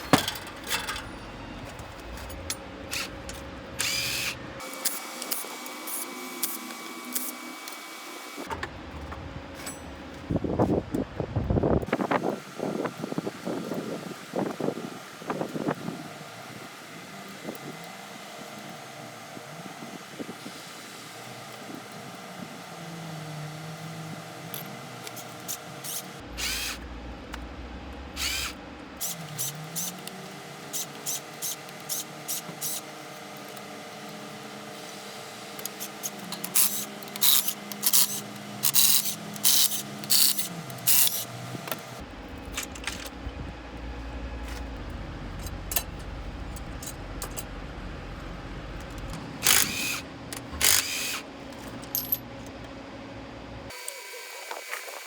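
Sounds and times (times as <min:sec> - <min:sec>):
hand tools clinking on metal: 0:00.0 - 0:03.4, 0:51.6 - 0:52.3
steady mechanical hum: 0:00.0 - 0:55.0.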